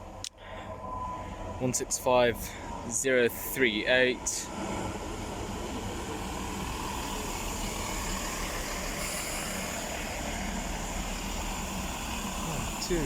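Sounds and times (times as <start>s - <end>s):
diesel engines idling: 0.0s - 13.0s
broad hiss: 6.8s - 13.0s.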